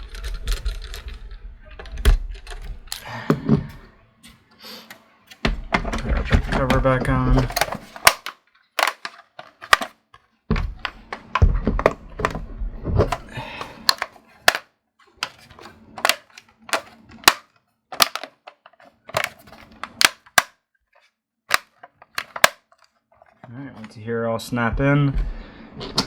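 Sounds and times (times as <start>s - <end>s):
plastic rubbing and handling: 0.0s - 3.0s, 5.4s - 24.1s
plastic clips snapping into place: 7.4s - 9.9s, 13.8s - 14.7s, 16.0s - 18.5s, 20.0s - 20.6s, 21.5s - 22.8s.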